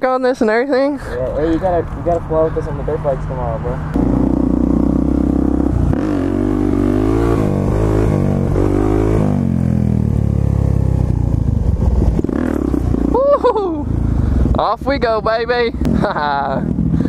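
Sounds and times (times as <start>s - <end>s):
pit bike engine revving: 3.6s - 17.0s.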